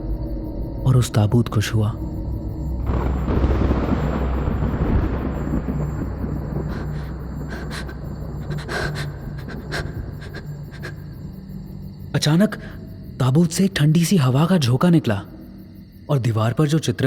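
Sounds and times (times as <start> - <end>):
low steady drone: 0.0 - 12.1
deep thunder-like rumble: 0.0 - 13.2.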